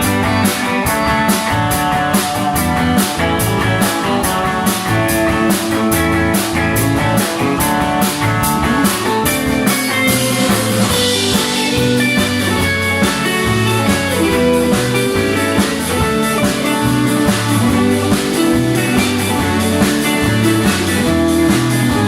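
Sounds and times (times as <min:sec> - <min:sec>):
band playing: 0:00.0 - 0:22.0.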